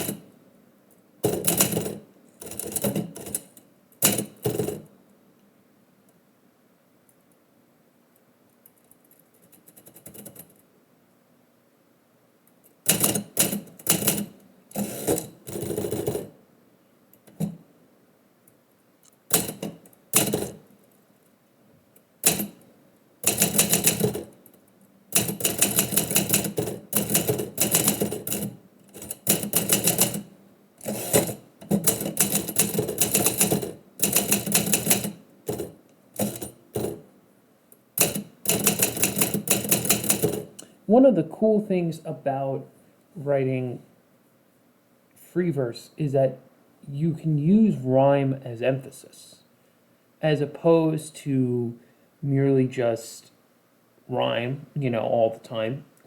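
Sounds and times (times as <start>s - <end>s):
typewriter typing: 1.3s - 4.8s, 12.9s - 16.3s, 22.2s - 22.6s, 23.2s - 24.4s, 25.1s - 37.0s, 38.0s - 40.6s.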